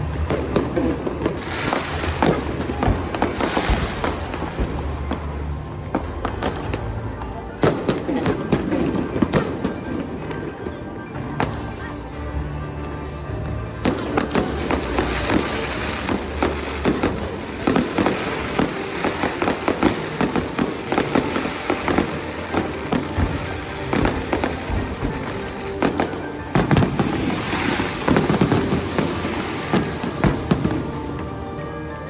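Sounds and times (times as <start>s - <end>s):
fireworks bangs and crackling: 0.0s - 32.0s
music playing: 0.0s - 32.0s.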